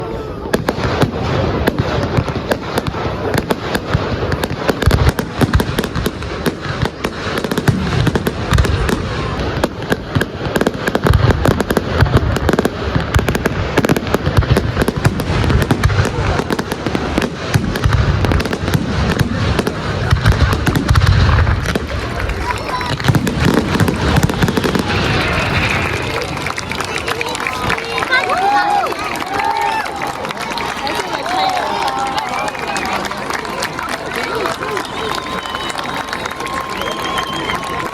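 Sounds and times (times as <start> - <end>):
fireworks booms: 0.4 - 28.5
fireworks crackling: 0.4 - 37.9.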